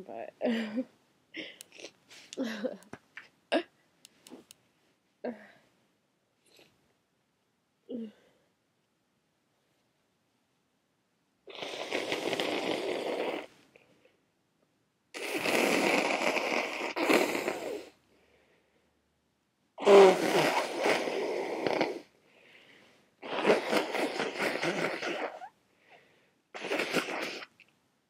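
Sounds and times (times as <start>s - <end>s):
person blowing nose: 11.5s - 13.6s, 15.2s - 18.0s, 19.8s - 22.1s, 23.2s - 25.6s, 26.6s - 27.6s.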